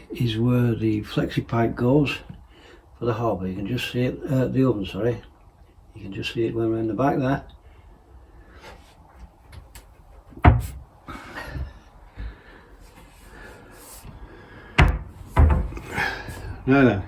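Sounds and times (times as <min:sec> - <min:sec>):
wooden cupboard doors knocking shut: 0:10.4 - 0:10.8, 0:14.8 - 0:16.0.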